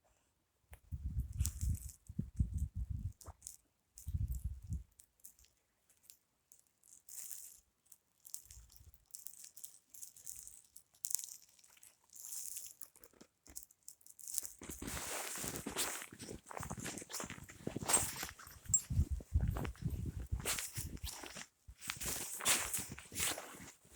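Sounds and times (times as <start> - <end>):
footsteps crunching in snow: 14.6 - 23.9.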